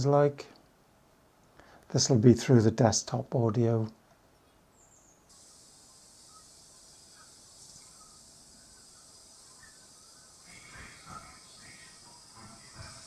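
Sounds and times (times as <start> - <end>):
steady high-pitched hiss: 0.0 - 13.0
faint chirps: 4.4 - 13.0.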